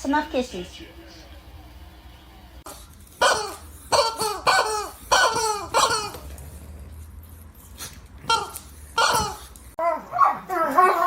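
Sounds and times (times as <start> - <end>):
dog barking: 3.2 - 6.2, 8.3 - 11.0.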